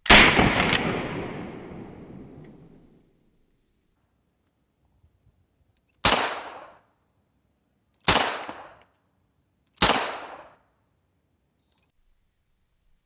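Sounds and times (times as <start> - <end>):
revolver shots with echo: 6.0 - 6.8, 8.1 - 8.8, 9.8 - 10.5.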